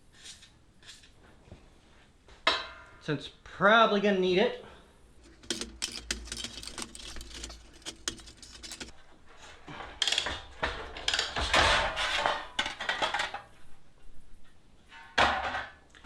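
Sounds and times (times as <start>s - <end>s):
metallic clicks and clinks: 5.2s - 8.9s
sheet metal handling: 5.2s - 8.9s.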